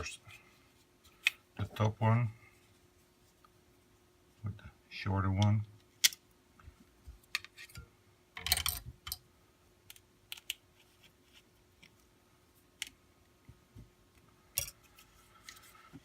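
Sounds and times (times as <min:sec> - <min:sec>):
small clicks and taps of plastic parts: 0:09.8 - 0:10.6.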